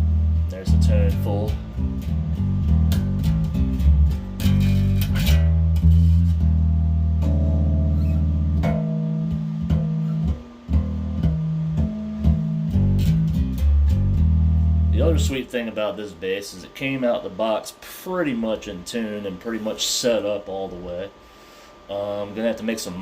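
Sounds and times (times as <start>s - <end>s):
electric bass notes plucked: 0.0s - 15.9s.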